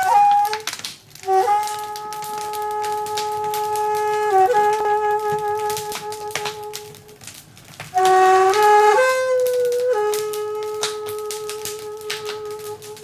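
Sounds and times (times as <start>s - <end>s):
bamboo flute playing: 0.0s - 13.0s
wood fire crackling: 0.0s - 13.0s.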